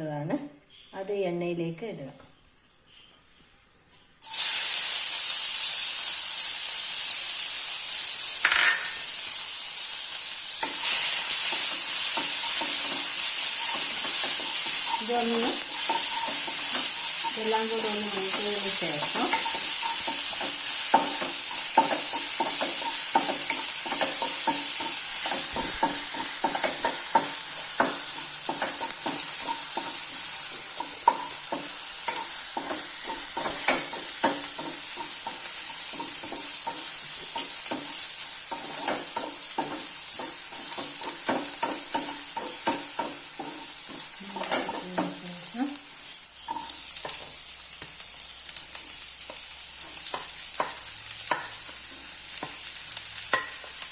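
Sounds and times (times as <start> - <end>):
spices sizzling in hot oil: 4.2 - 53.9
spoon scraping and tapping pan: 8.4 - 9.1, 10.6 - 45.3, 46.4 - 48.0, 49.3 - 53.8.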